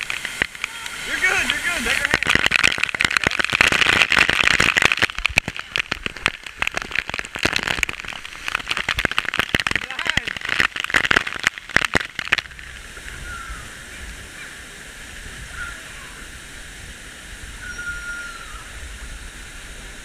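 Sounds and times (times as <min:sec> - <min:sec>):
close sharp crackling: 0:00.0 - 0:13.0
flowing river water: 0:00.0 - 0:20.0.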